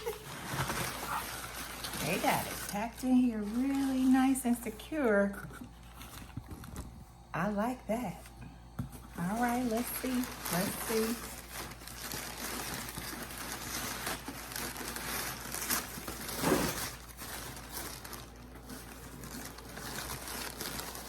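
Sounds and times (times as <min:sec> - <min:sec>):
packing material crunch: 0:00.0 - 0:04.7, 0:09.2 - 0:21.0
packing material rustling: 0:00.0 - 0:06.9, 0:09.0 - 0:21.0.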